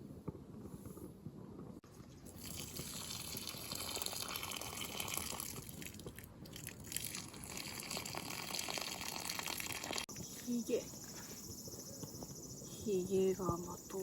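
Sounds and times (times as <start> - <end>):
water dripping: 2.2 - 10.1.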